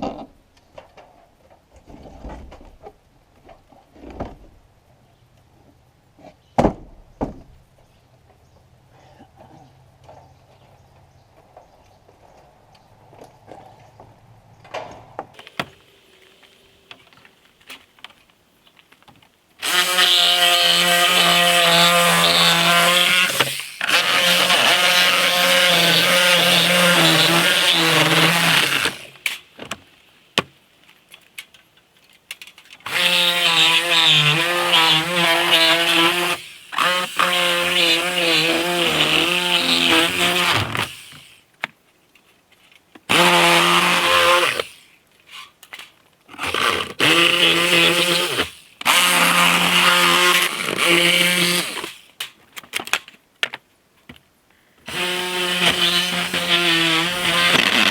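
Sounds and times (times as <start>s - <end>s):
electric power tool running: 19.6s - 29.2s, 32.9s - 41.3s, 54.9s - 57.9s.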